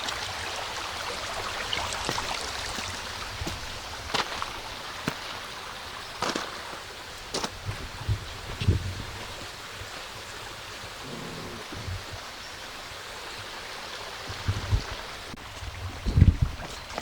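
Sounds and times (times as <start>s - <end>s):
creek water rushing: 0.0s - 17.0s.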